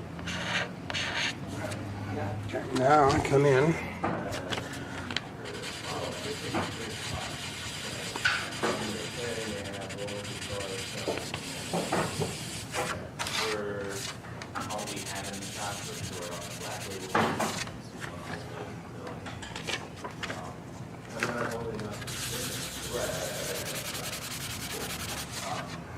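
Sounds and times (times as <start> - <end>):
rubbing and scraping strokes: 5.5 - 11.7, 12.4 - 17.6, 21.8 - 25.8.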